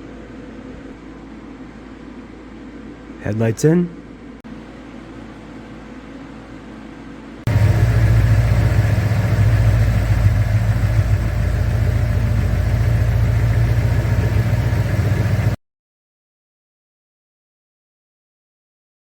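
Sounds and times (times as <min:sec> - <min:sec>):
car engine idling: 0:07.5 - 0:15.6.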